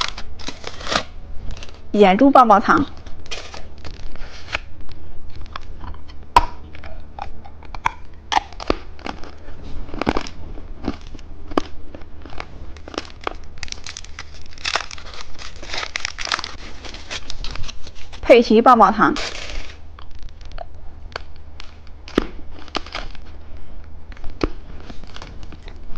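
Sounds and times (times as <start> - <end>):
plastic packaging crinkling: 0.0 - 1.9, 2.8 - 18.3, 19.1 - 25.9
crunching: 3.0 - 18.2, 19.2 - 25.9.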